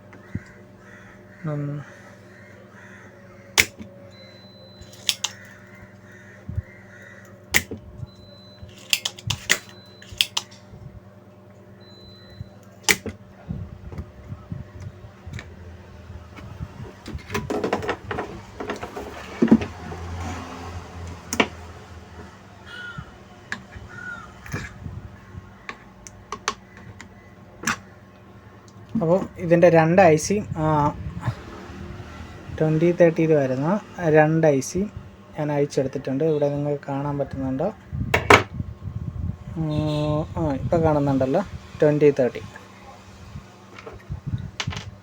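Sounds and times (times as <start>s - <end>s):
faint hum: 0.0s - 45.0s
small tools clicking and clattering: 4.8s - 5.4s, 8.7s - 10.6s.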